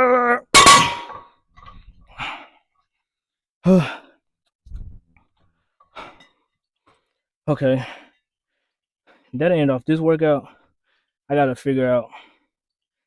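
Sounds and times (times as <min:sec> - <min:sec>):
man groaning: 0:00.0 - 0:00.5, 0:03.6 - 0:04.0
man breathing heavily and sighing: 0:02.0 - 0:02.7, 0:03.6 - 0:04.2, 0:04.8 - 0:06.4, 0:12.1 - 0:12.5.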